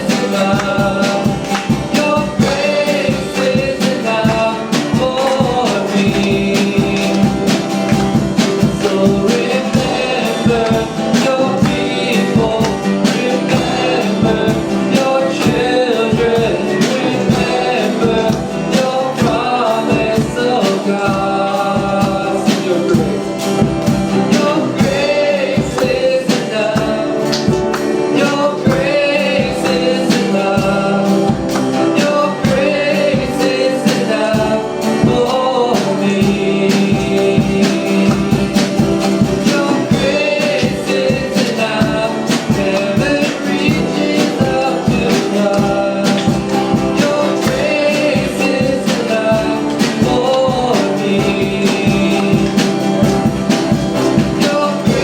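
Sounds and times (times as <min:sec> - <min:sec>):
band playing with steady beat: 0:00.0 - 0:55.0
voices singing: 0:00.0 - 0:55.0.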